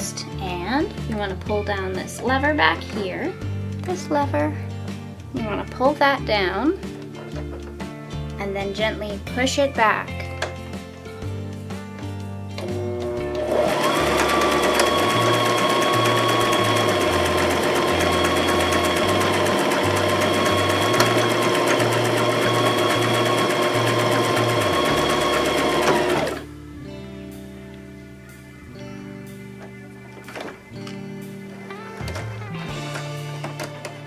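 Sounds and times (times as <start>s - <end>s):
background music with bass: 0.0s - 34.0s
sewing machine stitching: 12.6s - 26.4s.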